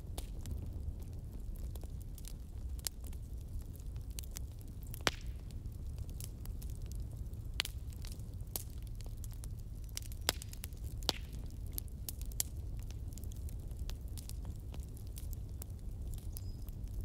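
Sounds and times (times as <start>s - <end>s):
fire crackling and popping: 0.0s - 17.0s.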